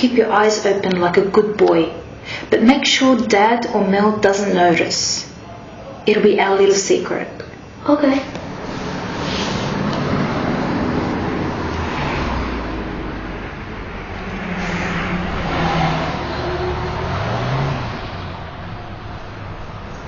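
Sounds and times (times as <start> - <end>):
traffic noise: 8.2 - 20.0
vehicle engine: 8.4 - 20.0.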